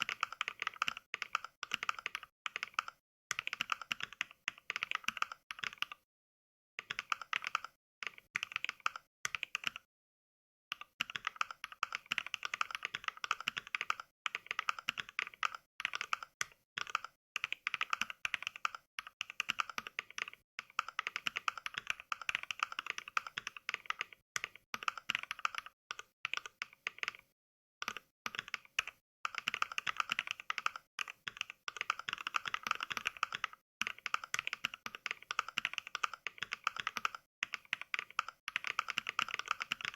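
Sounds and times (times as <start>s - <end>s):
mechanical keyboard typing clicks: 0.0s - 6.0s, 6.8s - 9.9s, 10.7s - 27.2s, 27.8s - 39.9s.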